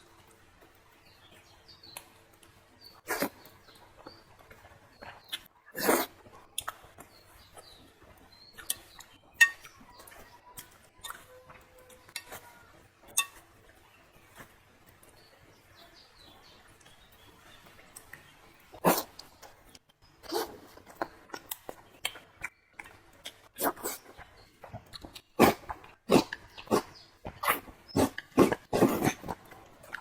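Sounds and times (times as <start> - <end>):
chewing: 1.3 - 15.3, 16.6 - 30.0
faint bird chirps: 7.0 - 14.4.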